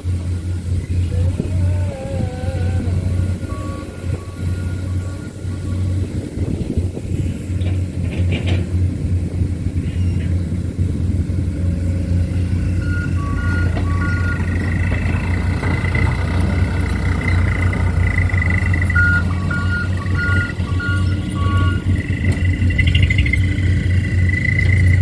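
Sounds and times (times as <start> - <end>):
heavy diesel engine running: 0.0 - 25.0
two-pitch electronic beeping: 12.4 - 25.0.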